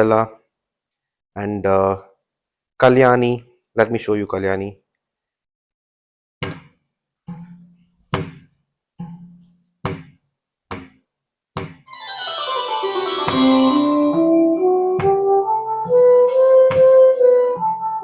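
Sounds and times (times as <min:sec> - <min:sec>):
keyboard percussion strokes: 0:11.9 - 0:18.0
sustained keyboard accompaniment: 0:11.9 - 0:18.0.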